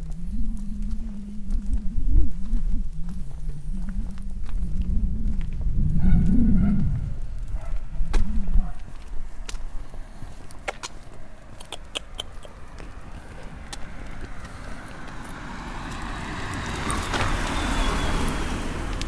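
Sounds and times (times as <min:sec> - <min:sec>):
car passing by: 0:09.1 - 0:19.0
sharp clicks: 0:10.5 - 0:12.6.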